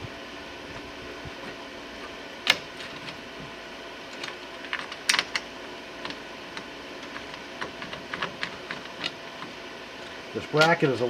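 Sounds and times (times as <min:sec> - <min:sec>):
metal clicks and knocks: 0:04.2 - 0:09.6.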